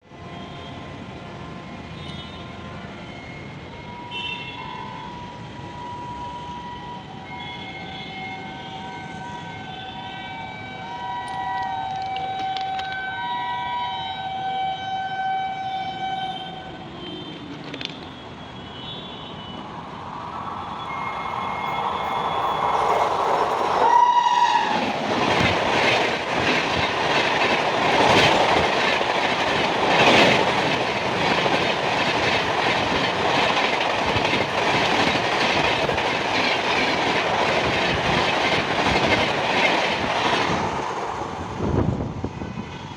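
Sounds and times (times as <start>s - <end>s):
locomotive two-tone horn blasts: 23.8s - 24.8s.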